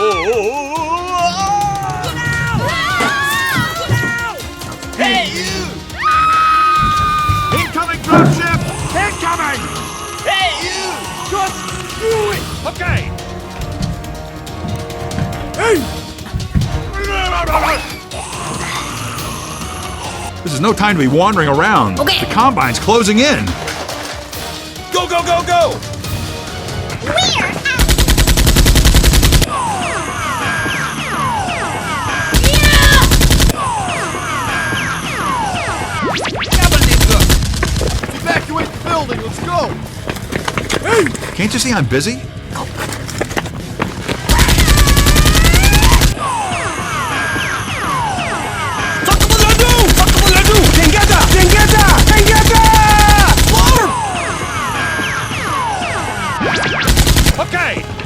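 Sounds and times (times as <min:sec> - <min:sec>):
people shouting: 0:00.0 - 0:13.2, 0:15.4 - 0:16.0, 0:16.8 - 0:20.4, 0:29.4 - 0:37.3, 0:44.0 - 0:56.7
rapid automatic gunfire: 0:27.8 - 0:29.5, 0:32.4 - 0:33.6, 0:36.5 - 0:37.6, 0:44.3 - 0:46.2, 0:49.1 - 0:53.9, 0:56.9 - 0:57.4
automatic gunfire burst: 0:49.1 - 0:53.8, 0:56.9 - 0:57.4.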